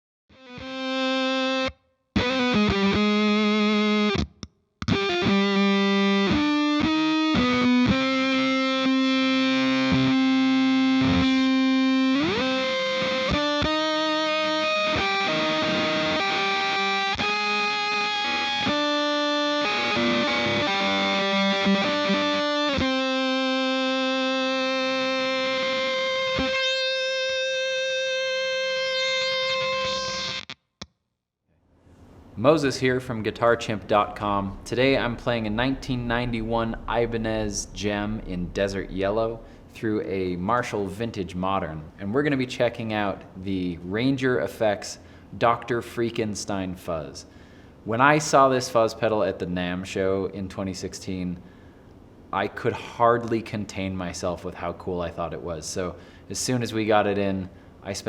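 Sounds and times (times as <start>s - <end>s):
distorted electric guitar riff: 0.4s - 30.6s, 33.9s - 39.8s.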